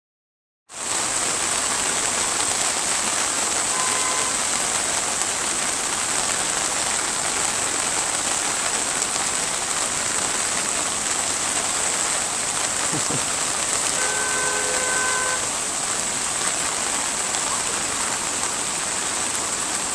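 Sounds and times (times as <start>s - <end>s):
heavy rain on flooded road: 0.7s - 19.9s.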